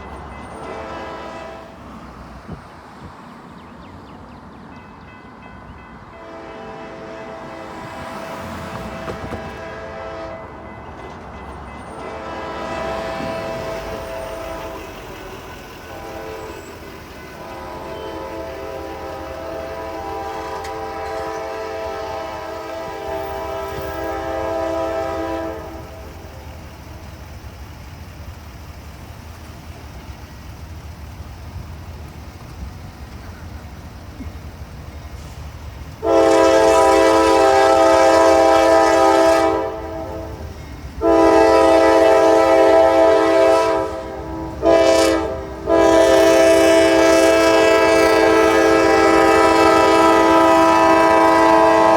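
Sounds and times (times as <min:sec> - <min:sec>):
locomotive air horn blasts: 0:00.5 - 0:02.0, 0:06.1 - 0:10.7, 0:11.9 - 0:26.4, 0:35.2 - 0:51.9.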